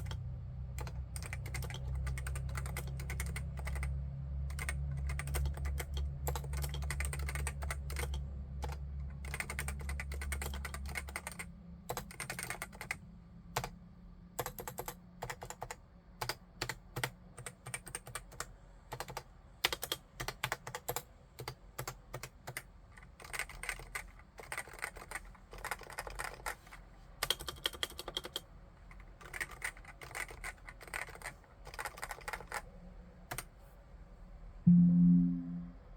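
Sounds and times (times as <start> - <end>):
keyboard typing: 0.0 - 0.2, 0.8 - 3.9, 4.5 - 13.0, 14.4 - 28.4, 29.0 - 32.6
steady low hum: 34.2 - 35.9.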